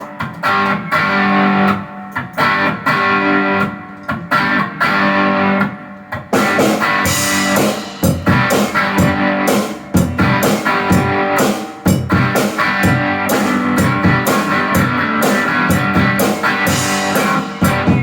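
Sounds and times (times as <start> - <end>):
distorted electric guitar: 0.0 - 18.0
drums and cymbals: 6.2 - 18.0.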